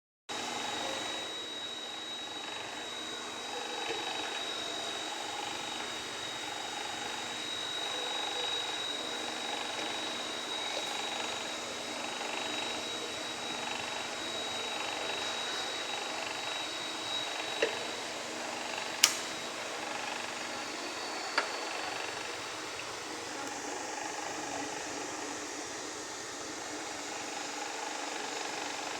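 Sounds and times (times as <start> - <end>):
machine hum with high whine: 0.3 - 28.9
sharp clicks: 19.0 - 19.4.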